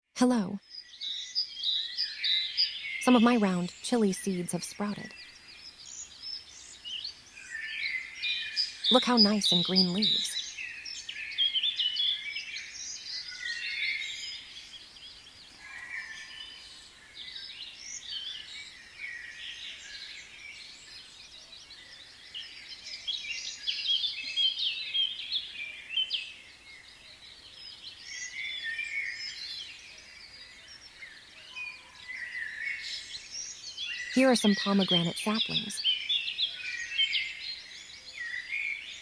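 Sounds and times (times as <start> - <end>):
small birds chirping and trilling: 0.3 - 39.0.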